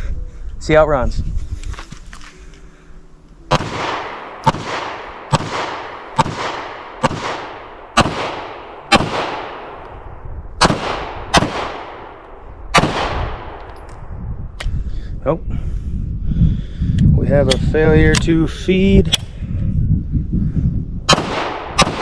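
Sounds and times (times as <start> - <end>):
pistol shots with echo: 3.5 - 13.9, 21.1 - 22.0.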